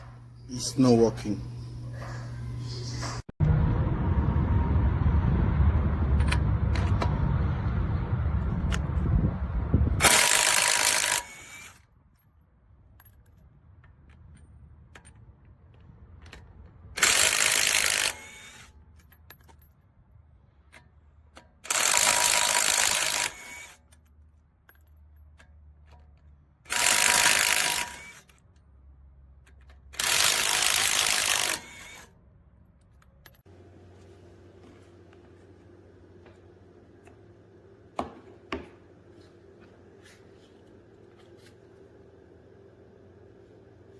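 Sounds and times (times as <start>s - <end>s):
person talking: 0.5s - 3.3s
loud low rumble: 2.4s - 10.0s
impact wrench bursts: 10.0s - 11.8s, 17.0s - 18.7s, 21.7s - 23.8s, 26.7s - 28.2s, 30.0s - 32.1s.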